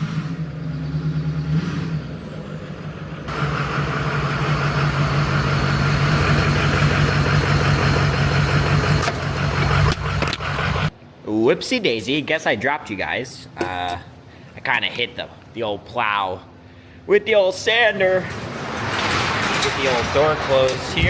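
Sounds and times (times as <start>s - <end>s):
truck engine running: 0.0s - 11.0s, 18.0s - 21.0s.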